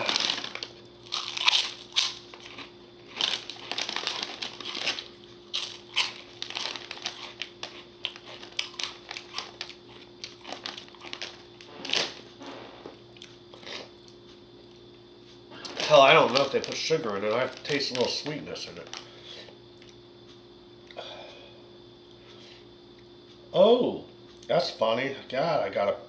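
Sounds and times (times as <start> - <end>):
plastic snack bag crinkling: 0.0 - 12.2, 15.6 - 19.4.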